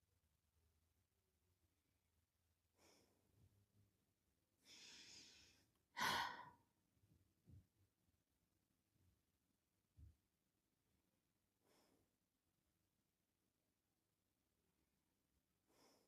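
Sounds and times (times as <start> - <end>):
person breathing: 2.8 - 3.2, 4.6 - 6.6, 15.7 - 16.0
person sighing: 6.0 - 6.5.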